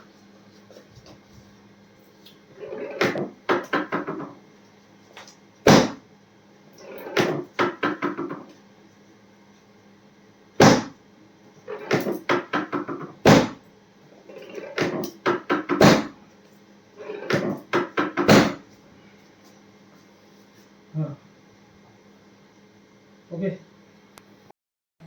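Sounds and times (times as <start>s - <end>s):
heavy thumps: 5.7s - 6.0s, 10.6s - 11.0s, 11.9s - 13.6s, 17.3s - 18.6s
quick percussive knocks: 5.7s - 6.0s, 10.6s - 11.0s, 12.3s - 13.6s, 17.8s - 18.6s.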